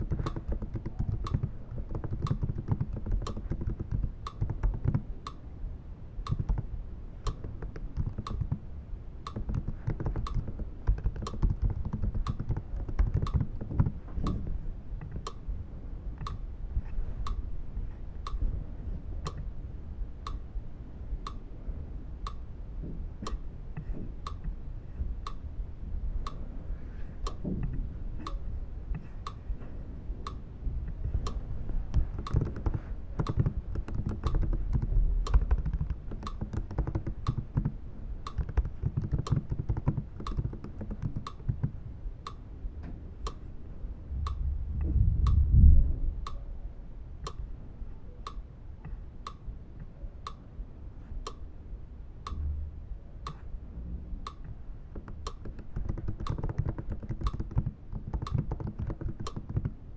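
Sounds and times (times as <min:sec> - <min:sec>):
typing on computer keyboard: 0:00.0 - 0:05.1, 0:06.3 - 0:06.7, 0:07.3 - 0:08.6, 0:09.3 - 0:14.4, 0:31.9 - 0:41.8, 0:55.0 - 0:59.8
steady sharp ticking: 0:00.0 - 0:05.5, 0:06.1 - 0:15.5, 0:16.1 - 0:16.5, 0:17.2 - 0:17.5, 0:18.2 - 0:18.4, 0:20.2 - 0:20.4, 0:22.2 - 0:22.4, 0:23.2 - 0:24.6, 0:25.2 - 0:25.4, 0:26.2 - 0:26.4, 0:27.2 - 0:27.5, 0:28.2 - 0:29.4, 0:30.2 - 0:42.4, 0:45.2 - 0:45.5, 0:54.2 - 0:59.9.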